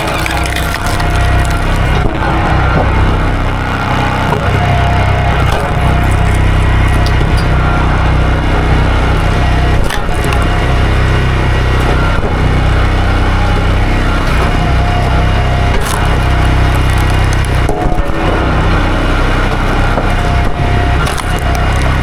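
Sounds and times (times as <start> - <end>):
sharp wood cracks: 0.0 - 2.2, 5.4 - 7.6, 9.7 - 10.8, 14.0 - 18.4, 19.5 - 22.0.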